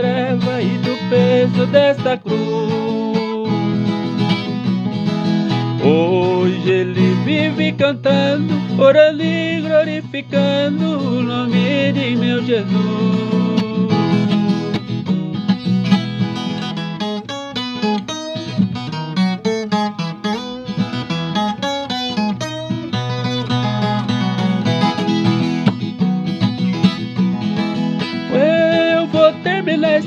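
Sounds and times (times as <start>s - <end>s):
person singing a hymn: 0.0s - 4.1s, 5.8s - 14.7s, 28.0s - 30.0s
plucked folk guitar melody: 0.0s - 30.0s.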